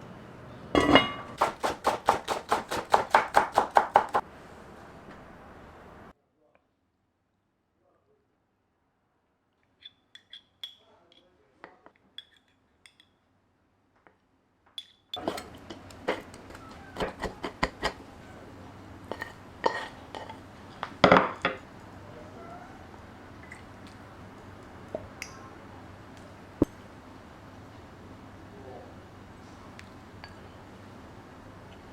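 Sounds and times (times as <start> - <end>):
dishes and utensils clinking: 0.7 - 1.4, 14.8 - 18.0, 19.0 - 21.6
steady background hiss: 4.2 - 6.2.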